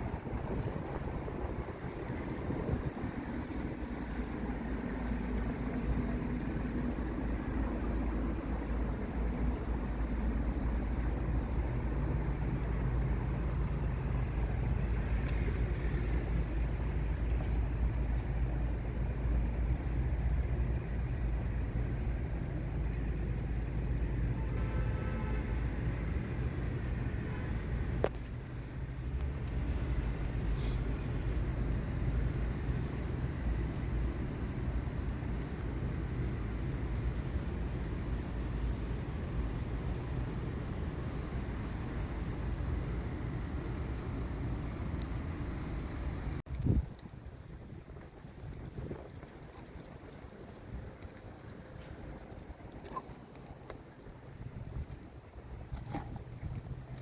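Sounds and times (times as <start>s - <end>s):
low outdoor rumble: 0.0s - 57.0s.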